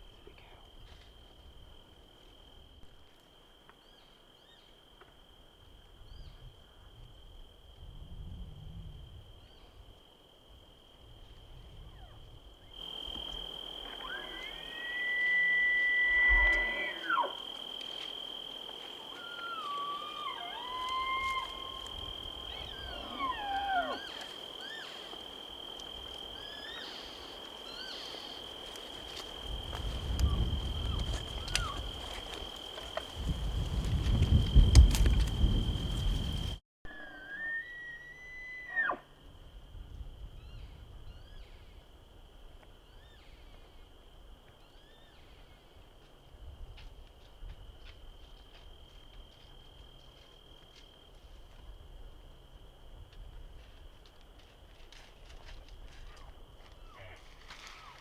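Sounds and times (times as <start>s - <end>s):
elk bugling: 12.8s - 36.6s.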